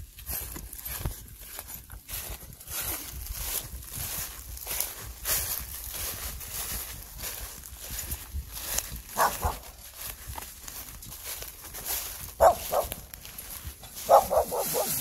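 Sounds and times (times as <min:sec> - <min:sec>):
dog barking: 0:09.1 - 0:09.7, 0:12.4 - 0:13.0, 0:14.0 - 0:15.0.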